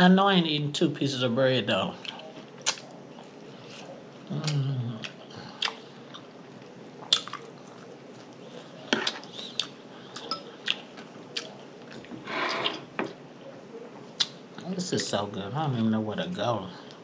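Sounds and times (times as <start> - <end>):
person chewing food: 2.0 - 13.2
wet mouth clicks and lip smacks: 2.6 - 2.9.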